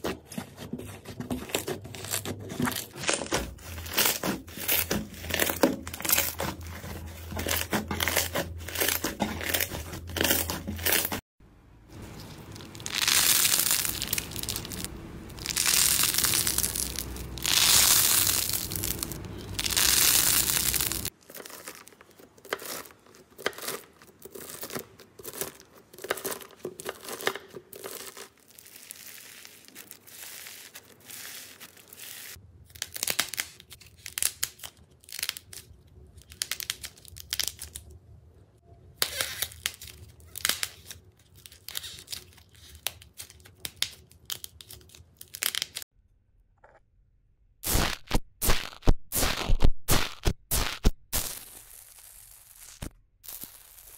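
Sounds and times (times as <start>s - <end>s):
slime squishing with hissing: 12.0s - 21.5s
slime crackling and popping: 12.1s - 27.2s.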